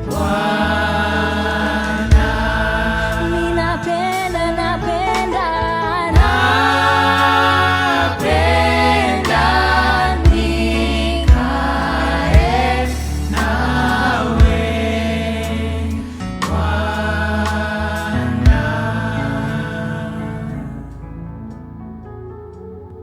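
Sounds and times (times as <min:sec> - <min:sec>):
choir singing gospel: 0:00.0 - 0:21.2
steady bass line: 0:00.0 - 0:22.2
loud drum hits: 0:06.2 - 0:06.6, 0:10.3 - 0:10.6, 0:14.4 - 0:14.8.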